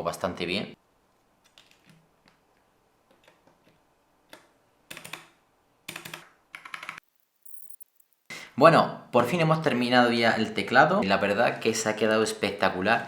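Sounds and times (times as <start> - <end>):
keycaps clicking onto keyboard: 5.9 - 7.6.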